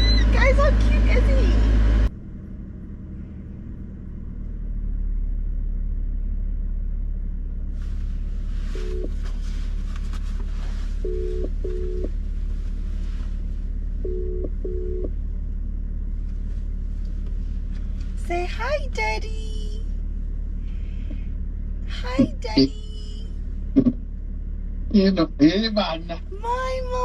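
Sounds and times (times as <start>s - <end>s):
car cabin rumble: 0.0s - 27.0s
short electronic beeps: 8.8s - 9.2s, 11.0s - 12.1s, 14.0s - 15.1s.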